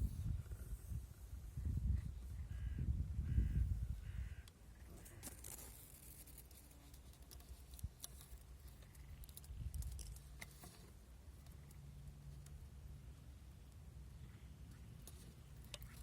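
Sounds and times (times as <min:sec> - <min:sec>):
small clicks: 0:05.2 - 0:11.8.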